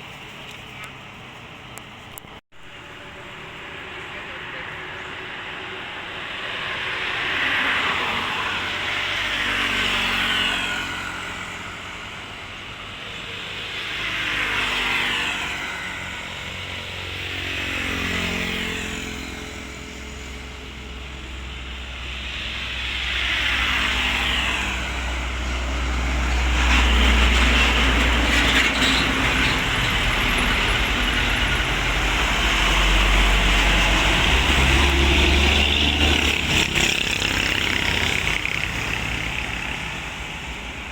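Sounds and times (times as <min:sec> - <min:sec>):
vehicles passing by: 0:00.0 - 0:40.9
heavy engine rumbling close: 0:20.4 - 0:40.9.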